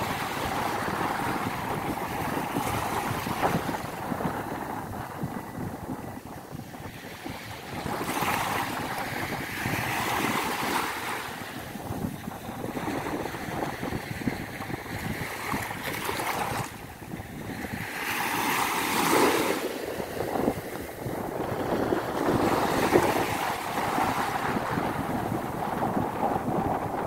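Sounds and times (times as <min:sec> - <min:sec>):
surf washing onto beach: 0:00.0 - 0:27.0
wind on microphone: 0:00.0 - 0:27.0.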